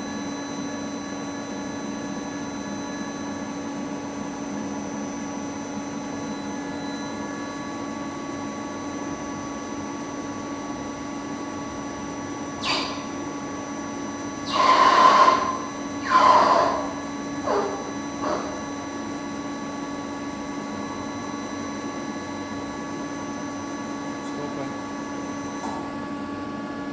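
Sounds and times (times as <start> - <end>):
lathe spindle humming: 14.2 - 19.1
falling squeals: 14.4 - 17.0
lathe tool cutting metal: 14.4 - 18.8.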